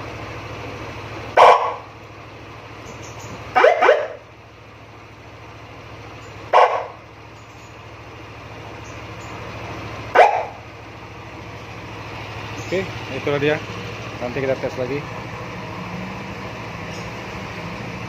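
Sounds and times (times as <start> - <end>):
dog barking: 1.4 - 1.9, 3.6 - 4.2, 6.5 - 7.0, 10.1 - 10.6.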